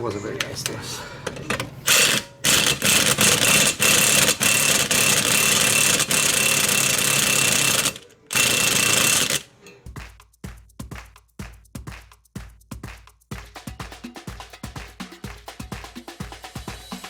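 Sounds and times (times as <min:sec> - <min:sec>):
power tool whining in bursts: 0:00.5 - 0:09.8.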